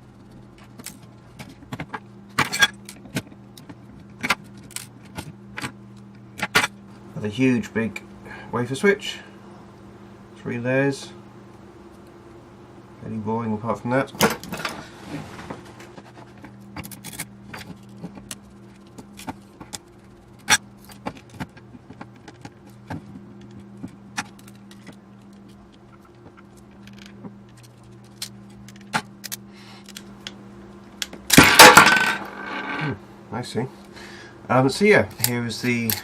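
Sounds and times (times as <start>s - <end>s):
low steady hum: 0.0s - 36.0s
clatter of metal parts: 0.6s - 5.7s, 16.1s - 30.1s, 31.0s - 33.0s, 35.1s - 36.0s
metal parts clicking and clinking: 0.6s - 5.7s, 16.6s - 30.3s, 31.0s - 32.8s, 35.1s - 36.0s.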